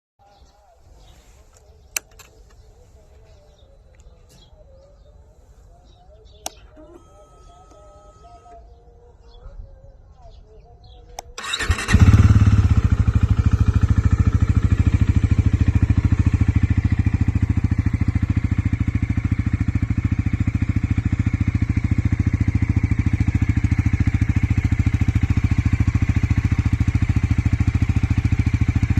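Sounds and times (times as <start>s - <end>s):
motorcycle engine idling: 11.4s - 28.9s.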